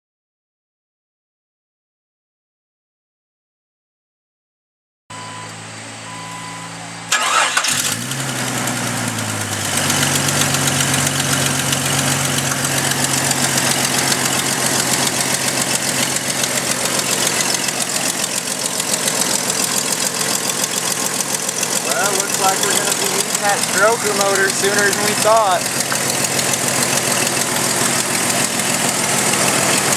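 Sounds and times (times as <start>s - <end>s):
short beeps: 5.1s - 6.8s
car engine starting and idling: 5.2s - 29.9s
rapid ticking exhaust leak: 7.1s - 29.9s.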